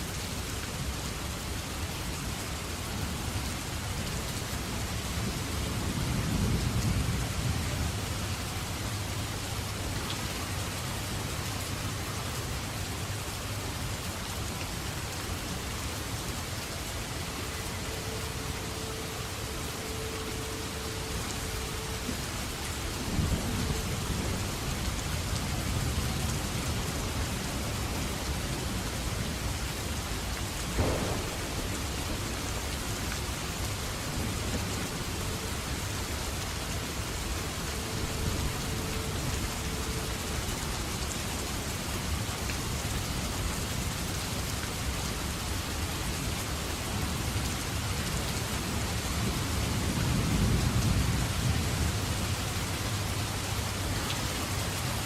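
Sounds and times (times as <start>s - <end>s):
heavy rain hissing: 0.0s - 55.0s
thunder rumbling: 30.6s - 40.4s
sharp thunder crack: 30.8s - 32.4s.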